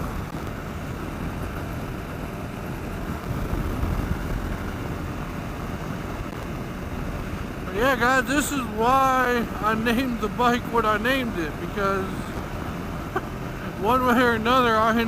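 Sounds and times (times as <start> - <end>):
wind rushing over microphone: 0.0 - 9.6
motorcycle engine running: 0.0 - 15.0.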